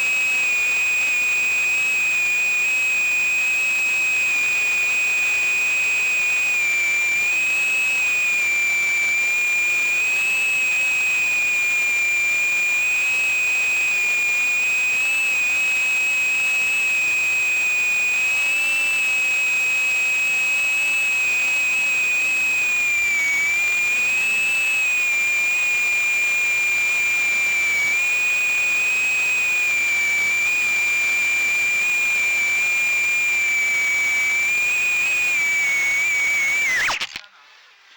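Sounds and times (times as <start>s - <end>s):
drone motors whining: 31.4s - 37.5s.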